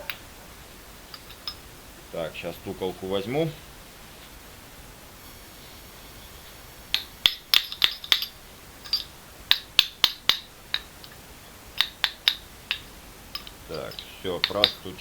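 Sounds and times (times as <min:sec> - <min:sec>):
hammer tapping metal: 0:06.9 - 0:11.2, 0:11.8 - 0:15.0.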